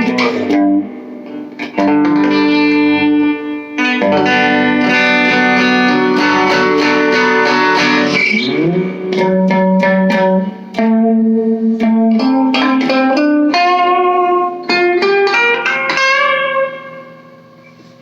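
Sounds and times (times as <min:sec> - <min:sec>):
clean electric guitar melody: 0:00.0 - 0:18.0.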